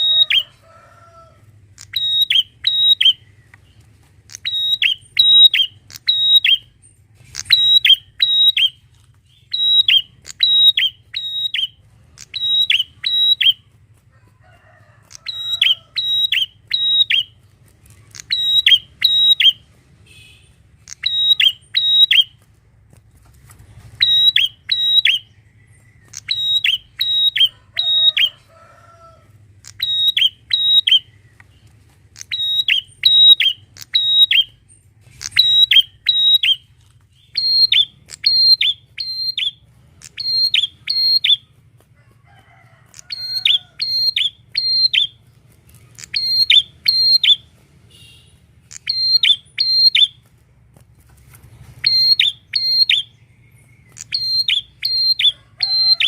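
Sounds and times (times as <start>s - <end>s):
bird calling high sharp notes: 0.0s - 0.6s, 1.7s - 3.5s, 4.3s - 13.6s, 15.1s - 17.4s, 18.1s - 22.4s, 24.0s - 28.4s, 29.6s - 31.3s, 32.2s - 41.5s, 42.9s - 45.2s, 46.0s - 50.2s, 51.8s - 56.0s.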